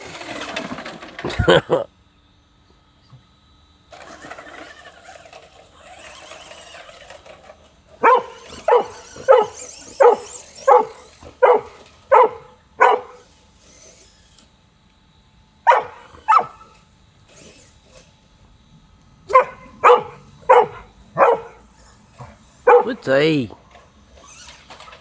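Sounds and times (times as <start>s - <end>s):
toy truck motor and tyres: 0.0s - 1.8s, 3.0s - 25.0s
dog barking: 8.0s - 13.3s, 15.6s - 16.7s, 19.3s - 21.6s, 22.2s - 23.1s.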